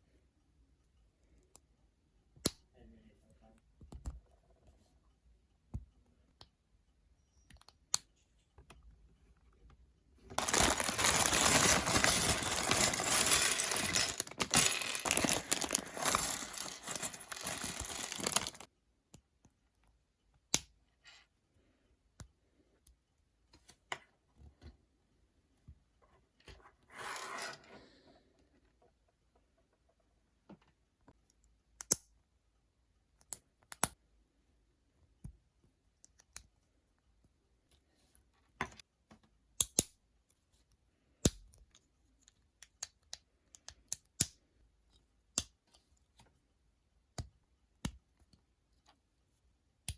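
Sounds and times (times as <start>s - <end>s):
plastic bag crinkling and tearing: 10.3s - 18.7s
small plastic pieces clicking: 10.4s - 18.7s.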